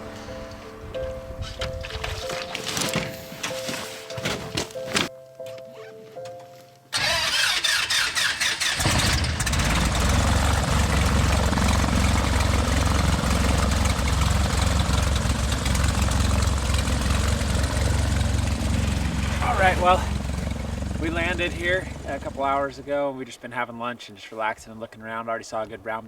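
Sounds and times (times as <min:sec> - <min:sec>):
small plane engine drone: 0:08.8 - 0:22.9.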